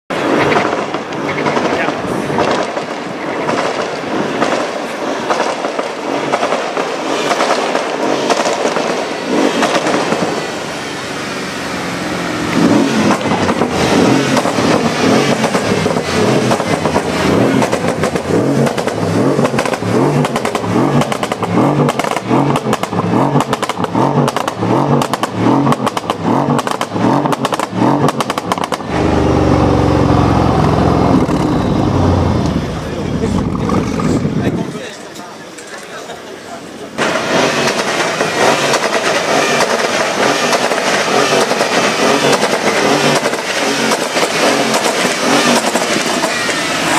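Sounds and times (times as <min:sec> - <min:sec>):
car engine revving: 0:05.8 - 0:34.7, 0:36.8 - 0:46.9
exhaust crackles and pops: 0:12.4 - 0:36.0, 0:37.0 - 0:46.5.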